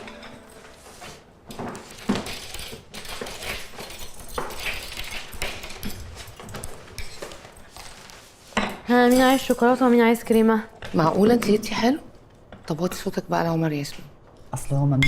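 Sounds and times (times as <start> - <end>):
dishes and cutlery clinking: 0.0 - 7.8, 8.5 - 11.6.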